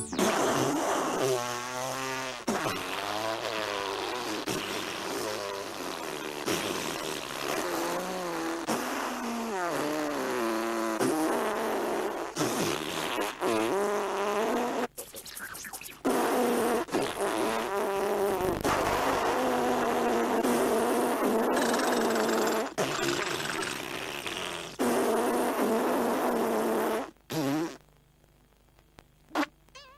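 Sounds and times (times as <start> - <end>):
drawn-out wavering burps: 17.5 - 24.7.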